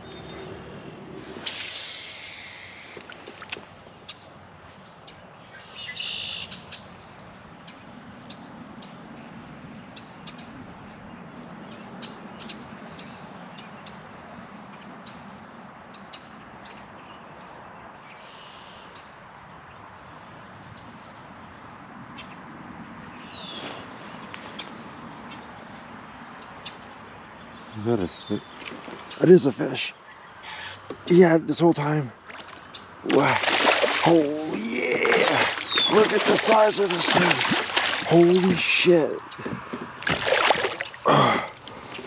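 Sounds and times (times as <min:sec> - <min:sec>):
birds chirping and calling: 0:00.0 - 0:07.0, 0:23.2 - 0:42.0
outdoor background hiss: 0:00.8 - 0:08.0.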